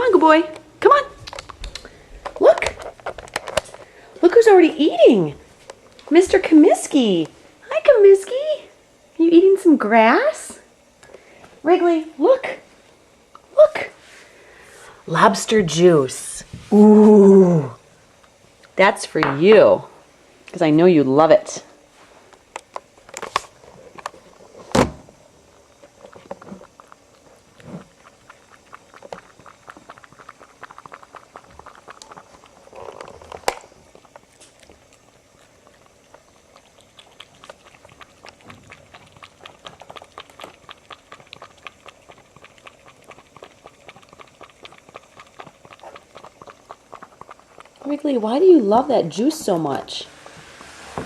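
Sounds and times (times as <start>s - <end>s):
cat lapping from a dish: 22.3s - 51.0s.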